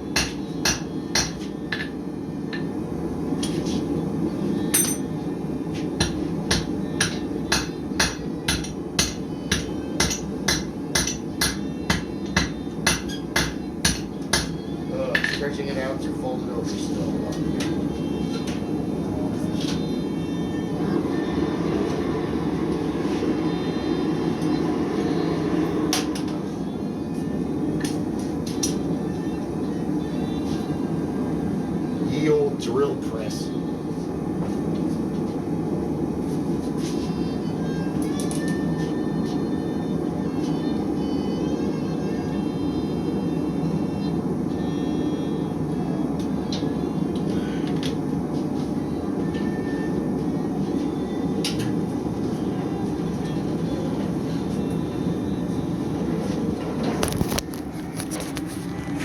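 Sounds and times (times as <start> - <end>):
hammer striking steel on anvil: 0.1 - 1.9, 4.8 - 5.1, 6.0 - 14.5.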